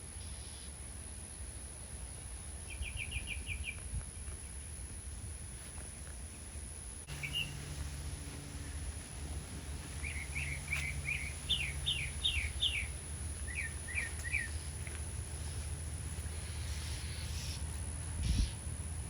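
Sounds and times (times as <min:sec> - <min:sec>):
low steady hum: 0:00.0 - 0:19.0
bird chirping: 0:02.6 - 0:03.9, 0:07.1 - 0:18.8.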